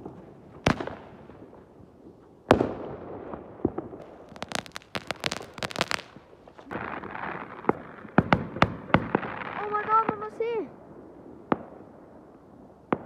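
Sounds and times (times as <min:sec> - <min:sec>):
fireworks crackling pops: 0:00.0 - 0:10.6
fireworks bang: 0:02.5 - 0:10.3.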